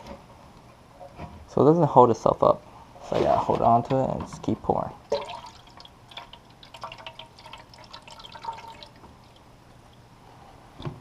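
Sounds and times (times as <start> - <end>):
water pouring into tank: 5.1 - 9.1.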